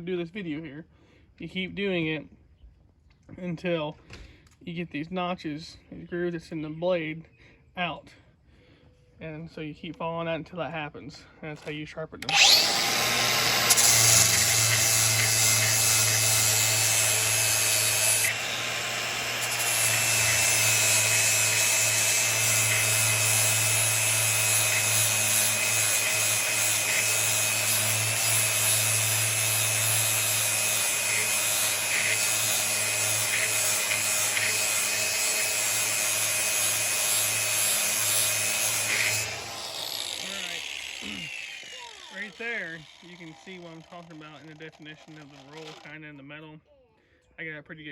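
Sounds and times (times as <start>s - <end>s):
angle grinder grinding steel: 12.2s - 46.0s.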